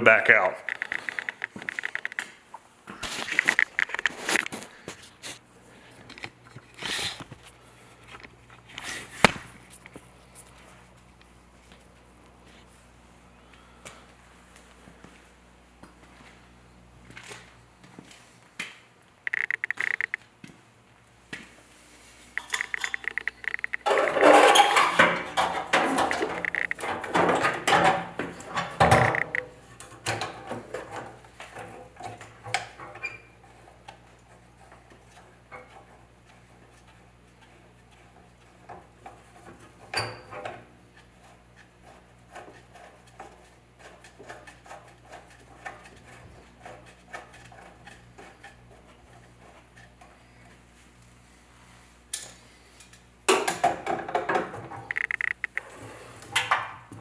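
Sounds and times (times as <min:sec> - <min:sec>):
faint steady hum: 0:00.0 - 0:57.0
metal parts clanking: 0:22.4 - 0:29.5.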